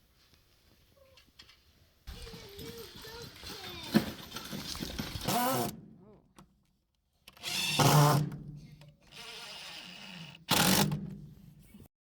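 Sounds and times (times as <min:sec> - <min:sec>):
power drill bursts: 0:07.4 - 0:08.2, 0:09.1 - 0:11.0.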